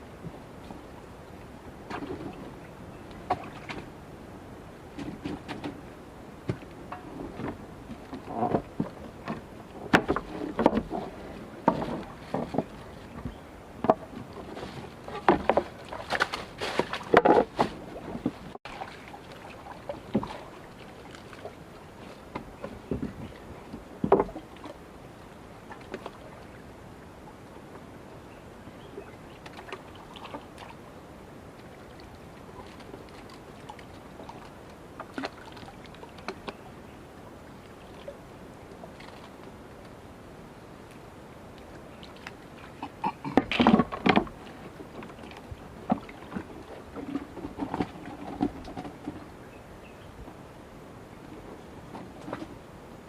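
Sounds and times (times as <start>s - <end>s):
water splashing: 14.0s - 27.1s, 29.3s - 39.6s, 41.7s - 49.4s.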